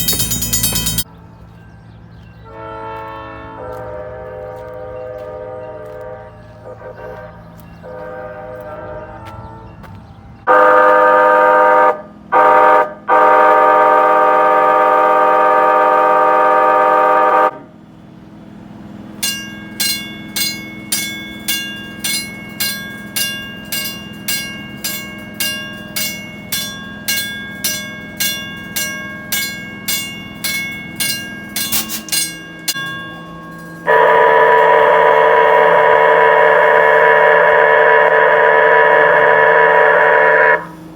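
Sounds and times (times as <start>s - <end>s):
warning bell ringing: 0.0s - 1.9s, 19.2s - 37.6s
train horn chord: 2.4s - 9.8s, 10.5s - 17.7s, 33.8s - 40.8s.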